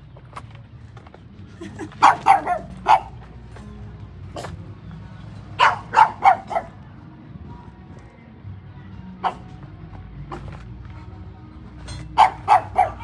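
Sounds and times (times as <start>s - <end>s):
dog barking: 1.9s - 3.3s, 4.4s - 4.6s, 5.6s - 6.8s, 9.2s - 9.5s, 10.3s - 10.6s, 11.9s - 13.0s.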